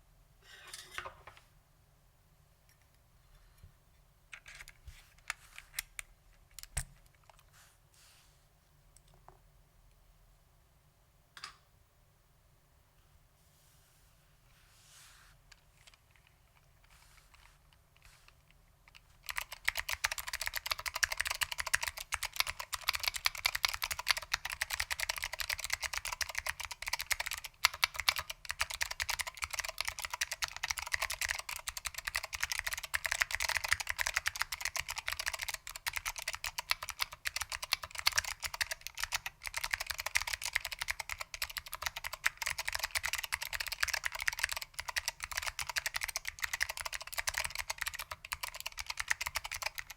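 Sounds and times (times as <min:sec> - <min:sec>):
clicky mechanical keyboard typing: 0:18.9 - 0:49.9.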